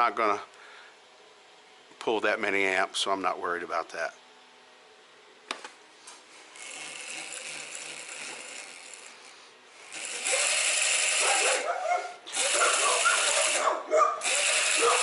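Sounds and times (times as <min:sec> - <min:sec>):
electric motor gear whir: 0:06.3 - 0:11.7, 0:12.3 - 0:15.0.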